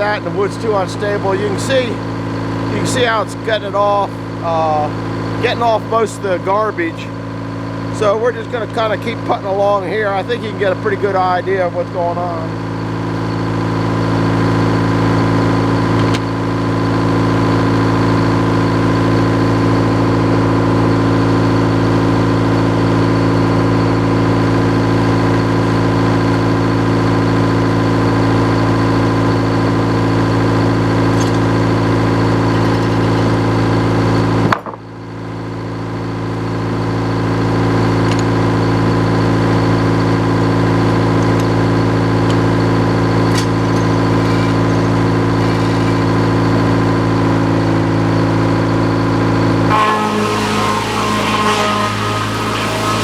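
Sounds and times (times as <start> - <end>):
engine running throttled down: 35.8 - 53.0.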